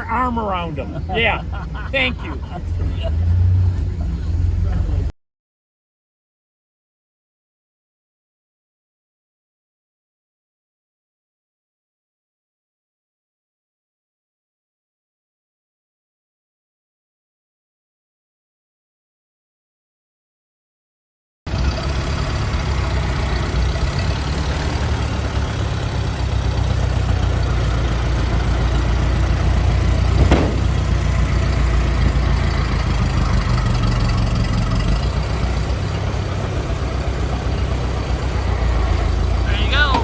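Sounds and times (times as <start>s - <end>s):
engine rumbling: 0.0s - 5.1s, 21.5s - 40.0s.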